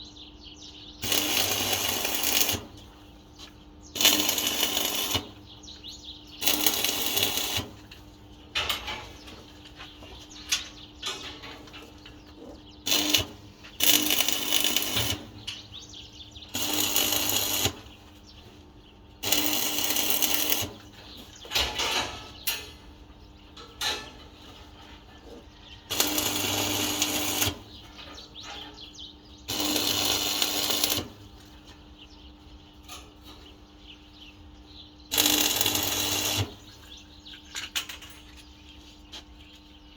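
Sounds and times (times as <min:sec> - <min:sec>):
arc welding crackling and hissing: 0:01.0 - 0:11.1, 0:11.7 - 0:22.0, 0:25.2 - 0:33.6, 0:34.4 - 0:37.4.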